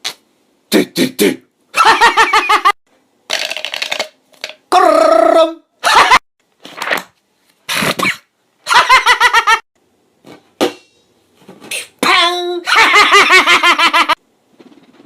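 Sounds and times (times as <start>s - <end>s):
person making mouth sounds: 0.0s - 1.5s, 4.6s - 5.7s.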